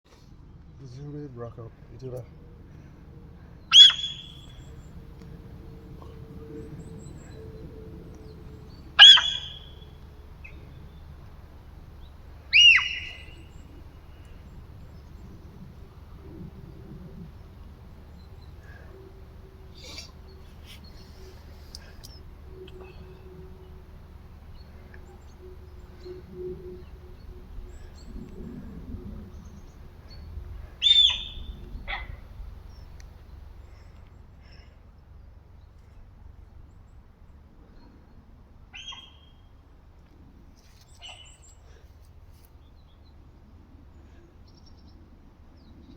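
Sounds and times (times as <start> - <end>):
deer squealing calls: 3.7 - 4.8, 8.9 - 10.8, 12.5 - 13.5, 30.8 - 32.2.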